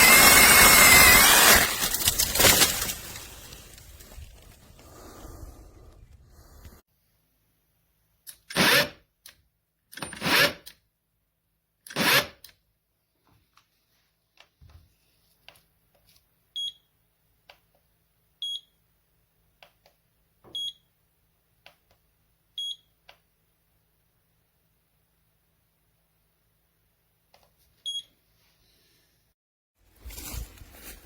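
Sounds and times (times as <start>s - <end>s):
loud rustling or scraping: 0.0s - 6.8s, 29.9s - 31.0s.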